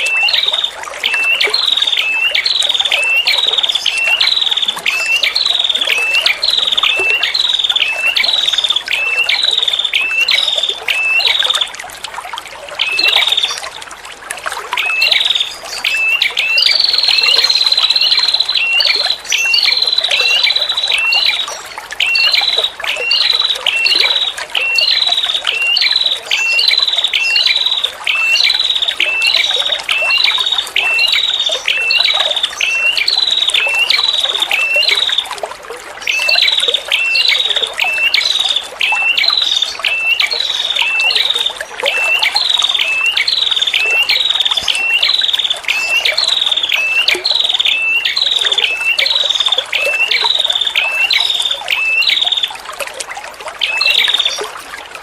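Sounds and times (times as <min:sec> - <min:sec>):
trickling water: 0:00.0 - 0:55.0.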